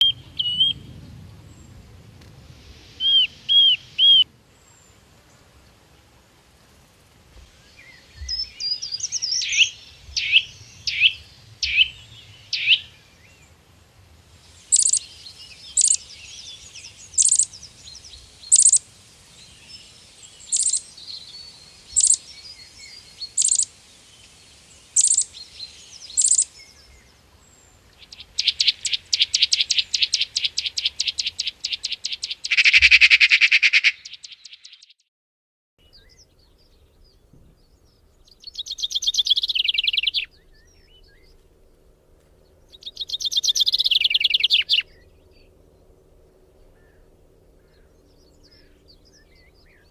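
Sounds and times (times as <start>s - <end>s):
bird trill: 0.0s - 0.9s, 3.0s - 4.3s, 7.8s - 13.4s, 14.7s - 18.8s, 20.4s - 23.7s, 25.0s - 26.8s, 28.0s - 35.0s, 38.3s - 41.4s, 42.7s - 45.5s
birds singing and calling: 0.0s - 1.8s, 2.9s - 5.0s, 7.4s - 13.6s, 14.5s - 35.0s, 35.8s - 49.9s.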